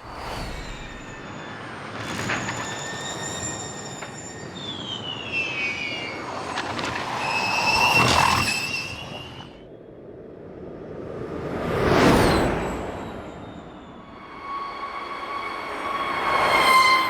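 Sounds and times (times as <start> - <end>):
electric race car whine: 0.1 - 9.6.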